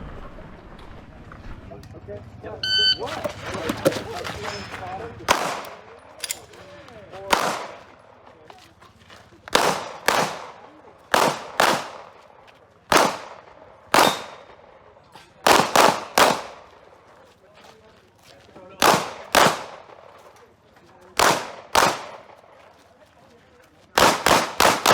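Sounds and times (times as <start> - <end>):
pistol shots with echo: 5.2 - 8.2, 9.5 - 16.8, 18.8 - 20.3, 21.2 - 22.5, 24.0 - 24.9.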